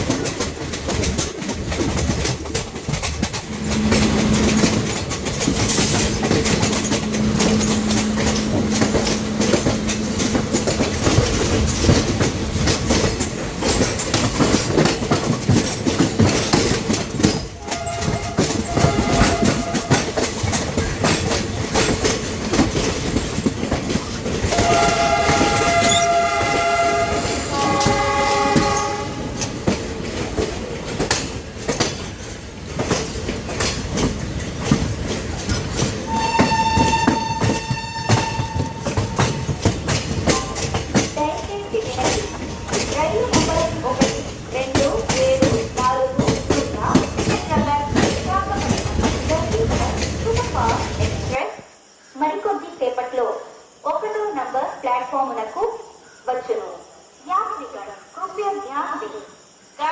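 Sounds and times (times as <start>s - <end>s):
train wheels clickety-clack: 0.0s - 51.4s
multi-tone train horn: 3.5s - 5.0s, 5.9s - 11.5s, 17.6s - 20.3s, 24.4s - 29.5s, 36.1s - 39.7s.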